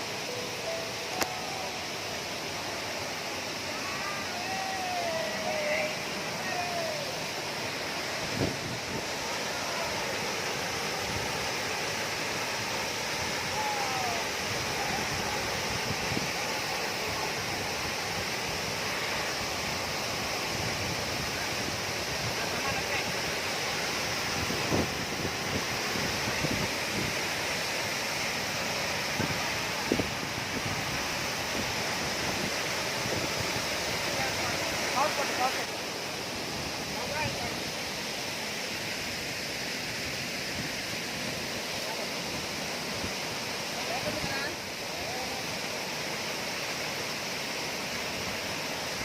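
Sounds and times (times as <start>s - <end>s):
waterfall rushing: 0.0s - 49.0s.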